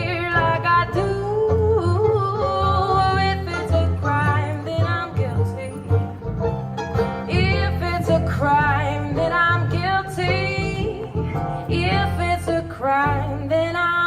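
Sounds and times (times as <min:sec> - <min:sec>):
country song with guitar: 0:00.0 - 0:14.0.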